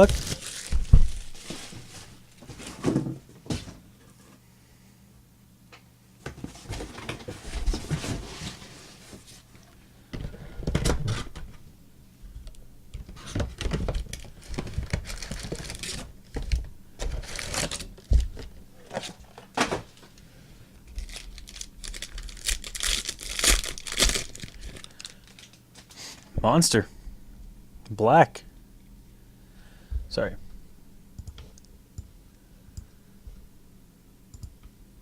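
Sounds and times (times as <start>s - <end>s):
plastic packaging crinkling and tearing: 0.0s - 2.2s, 13.6s - 19.5s, 20.9s - 25.8s.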